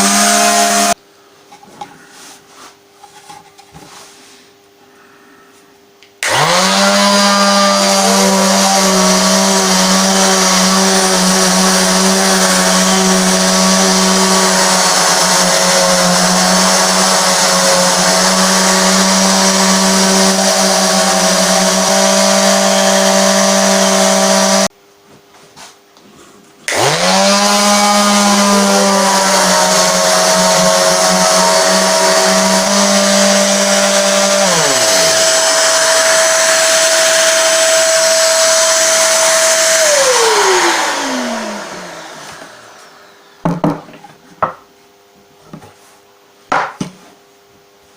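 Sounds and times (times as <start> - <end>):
electric sander whining: 0.0 - 1.0, 6.2 - 24.7, 26.7 - 43.6.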